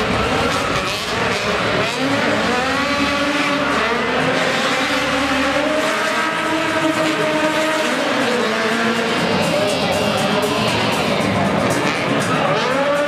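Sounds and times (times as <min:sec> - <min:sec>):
car engine revving high: 0:00.0 - 0:13.0.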